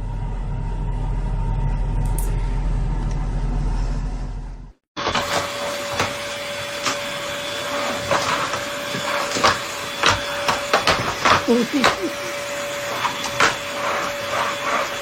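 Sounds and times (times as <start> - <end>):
low rumble: 0.0 - 4.8.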